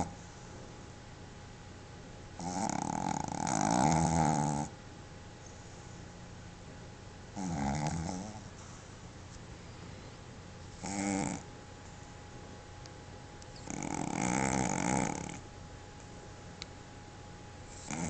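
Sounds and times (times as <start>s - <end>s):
dog snoring: 0.0s - 0.2s, 2.4s - 4.8s, 7.3s - 8.8s, 10.7s - 11.5s, 13.5s - 15.4s, 17.7s - 18.0s.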